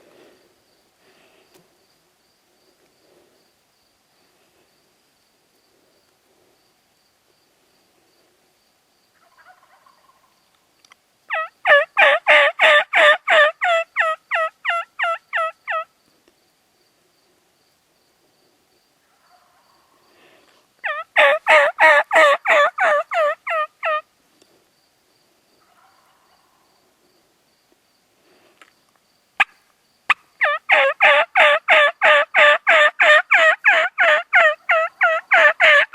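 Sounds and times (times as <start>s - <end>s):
faint turkey calls: 9.1s - 10.6s, 11.3s - 15.9s, 18.4s - 24.6s, 25.6s - 27.3s
turkey yelps: 9.2s - 10.3s, 11.3s - 15.9s, 20.8s - 24.0s, 30.1s - 35.9s.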